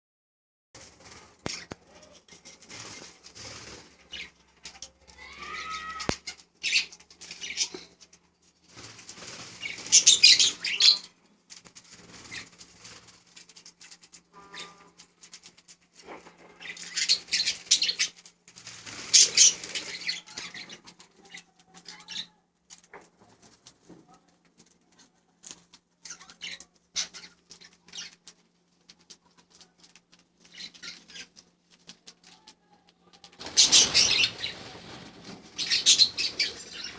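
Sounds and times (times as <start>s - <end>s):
wing flutters: 0.8s - 23.9s, 33.1s - 36.9s
budgerigars chirping and chattering: 1.1s - 11.2s, 11.9s - 13.0s, 13.8s - 22.4s, 26.0s - 28.2s, 30.4s - 31.4s, 33.4s - 36.9s.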